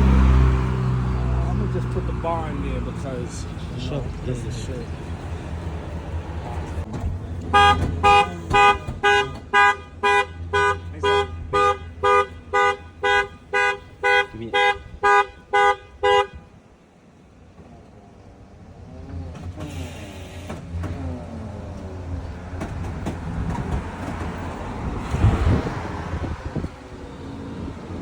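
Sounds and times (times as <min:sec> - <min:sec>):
car horn honking: 0:07.4 - 0:16.7, 0:19.6 - 0:20.8.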